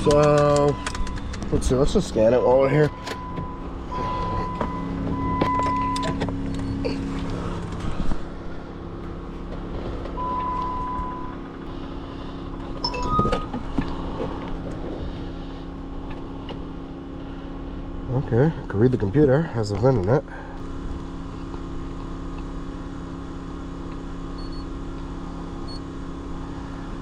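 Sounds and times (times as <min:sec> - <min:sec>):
portable generator humming: 0:00.0 - 0:27.0
short electronic beeps: 0:10.2 - 0:11.3, 0:24.4 - 0:24.7.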